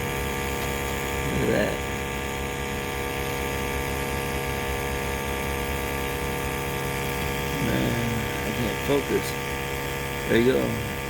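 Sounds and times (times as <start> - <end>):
motor humming: 0.0 - 11.0.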